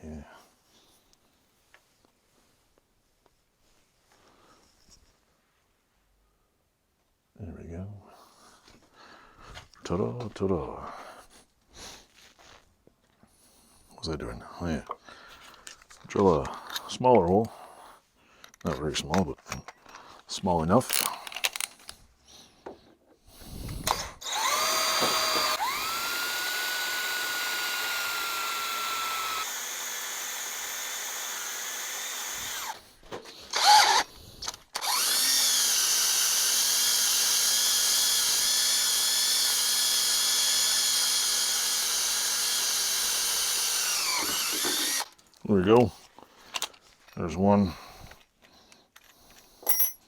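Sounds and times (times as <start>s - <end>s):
drill whining through metal: 23.4s - 32.8s, 33.5s - 45.2s.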